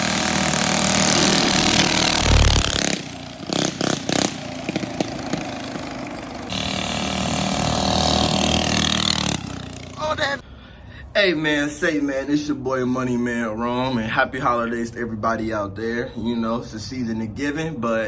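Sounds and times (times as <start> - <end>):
small motorbike engine running: 0.0 - 10.3
heavy low thump: 2.2 - 2.9.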